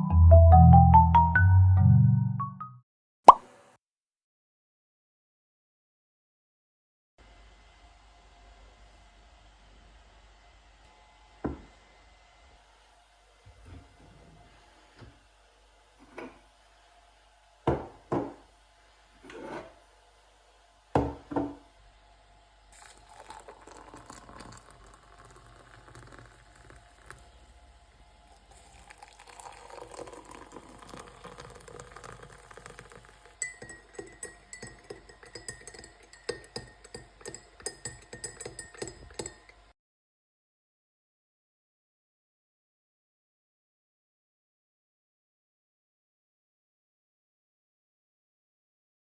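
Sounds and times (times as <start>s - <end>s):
spoon clinking in cup: 22.8s - 27.2s, 28.7s - 39.6s
liquid pouring: 22.8s - 27.6s, 28.2s - 39.4s
tableware knocks and clinks: 33.4s - 39.5s.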